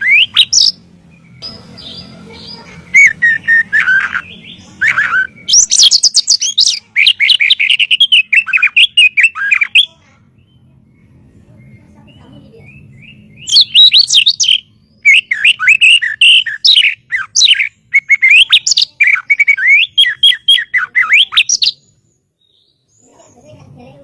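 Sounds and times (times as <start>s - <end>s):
bird whistling song: 0.0s - 11.8s, 12.6s - 23.0s
faint low hum: 0.0s - 16.6s.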